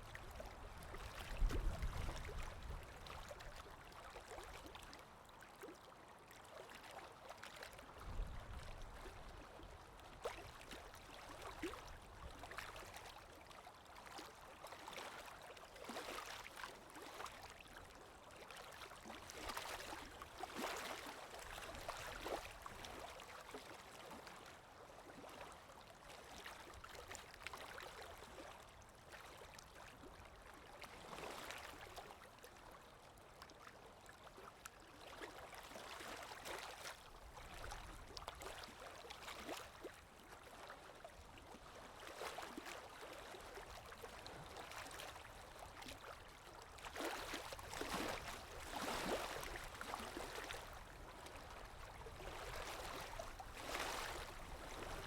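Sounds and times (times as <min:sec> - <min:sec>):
waves breaking on shore: 0:52.2 - 0:55.0.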